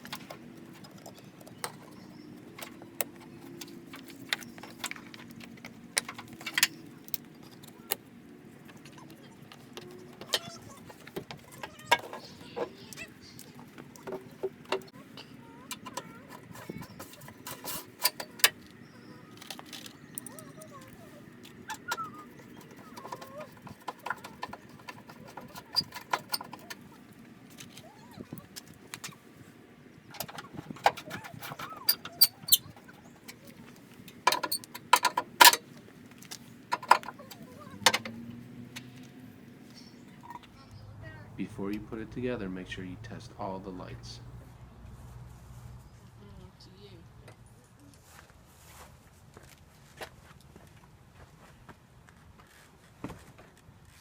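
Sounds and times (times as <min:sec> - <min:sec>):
plastic and metal parts clicking: 0:00.0 - 0:29.2, 0:30.1 - 0:40.5
birds chirping: 0:00.0 - 0:44.5
car parts and tools knocking: 0:13.9 - 0:18.7, 0:21.6 - 0:26.9, 0:30.1 - 0:35.7, 0:36.7 - 0:39.0.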